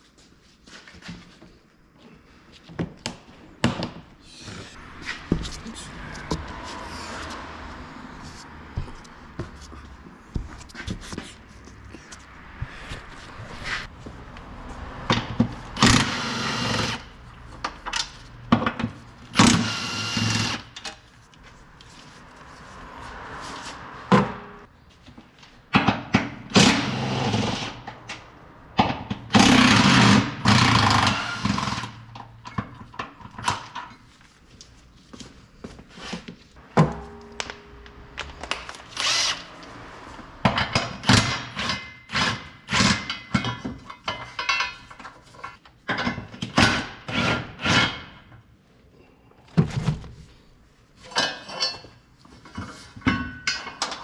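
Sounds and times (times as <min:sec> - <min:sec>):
power tool running: 0:15.8 - 0:17.1, 0:19.4 - 0:20.7.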